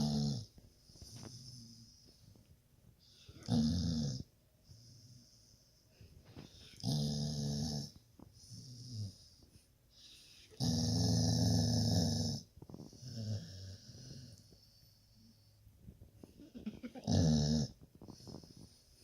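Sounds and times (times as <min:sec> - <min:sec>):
dog snoring: 0:00.0 - 0:01.9, 0:03.2 - 0:05.4, 0:06.5 - 0:09.4, 0:10.0 - 0:14.6, 0:17.0 - 0:18.8.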